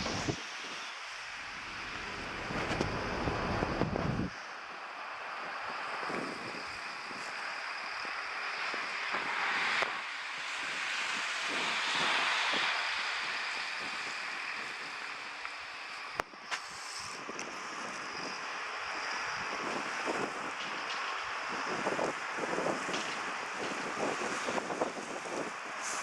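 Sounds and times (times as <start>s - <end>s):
wind buffeting microphone: 0.0s - 4.4s, 16.4s - 26.0s
storm wind hissing: 0.0s - 26.0s.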